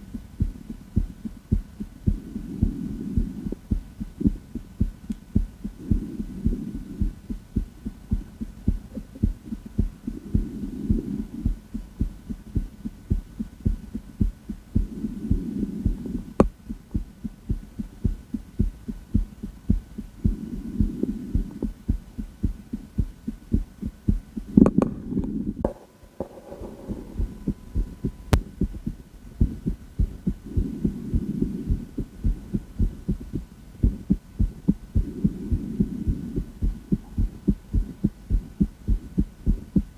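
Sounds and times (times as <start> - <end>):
heartbeat through stethoscope: 0.0 - 39.9
soft breathing: 1.8 - 4.6, 5.4 - 12.8, 13.7 - 17.4, 18.3 - 22.6, 26.6 - 39.9.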